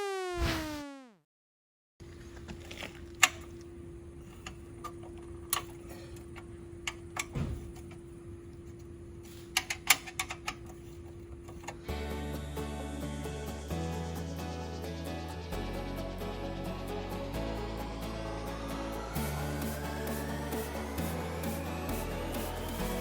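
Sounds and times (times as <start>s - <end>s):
background music: 11.9s - 23.0s.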